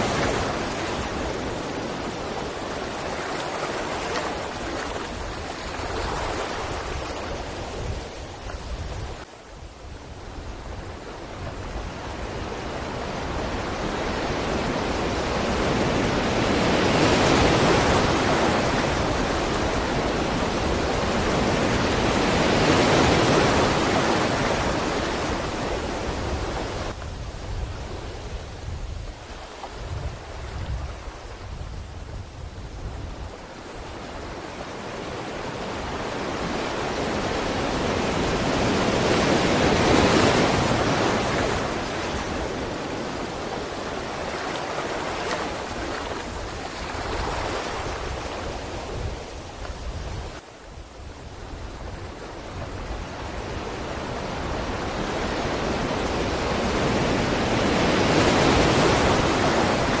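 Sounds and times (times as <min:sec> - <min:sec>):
ocean waves breaking on shore: 0:00.0 - 1:00.0.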